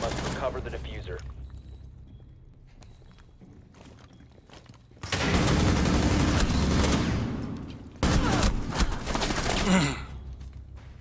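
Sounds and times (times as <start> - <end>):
person coughing harshly: 9.5 - 10.2.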